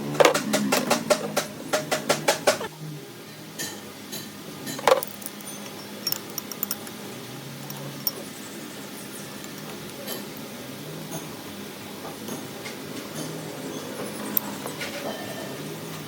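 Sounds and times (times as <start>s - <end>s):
light metal clinks: 4.7s - 7.0s.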